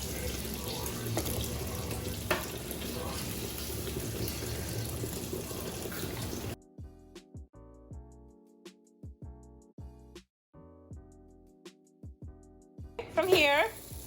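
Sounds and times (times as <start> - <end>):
water rushing from a tap: 0.0 - 6.6, 13.2 - 14.0.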